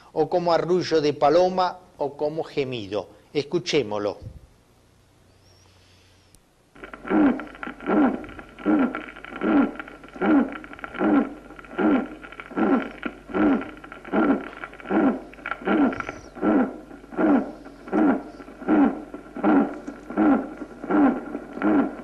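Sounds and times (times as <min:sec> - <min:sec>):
heartbeat with musical murmur: 0:06.8 - 0:22.0.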